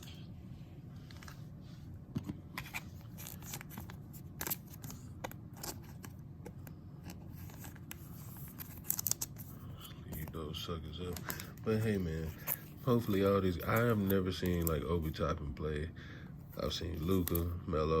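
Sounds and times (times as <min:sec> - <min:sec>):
steady low hum: 0:00.0 - 0:18.0
trading cards clicking and scraping: 0:02.2 - 0:10.4, 0:11.0 - 0:14.9, 0:17.0 - 0:17.5.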